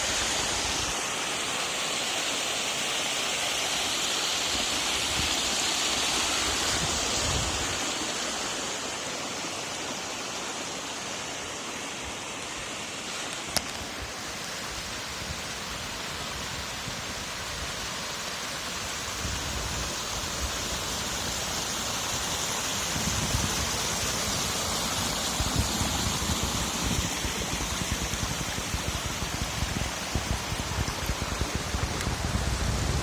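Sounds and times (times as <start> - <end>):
waterfall rushing: 0.0 - 33.0.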